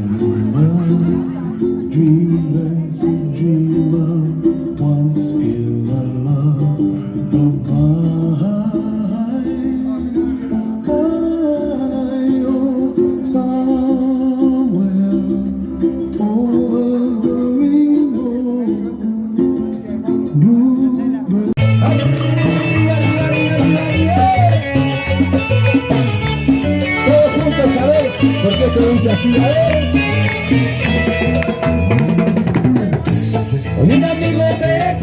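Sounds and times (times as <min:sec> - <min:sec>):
plucked guitar melody: 0:00.0 - 0:35.0
live band music: 0:21.3 - 0:35.0.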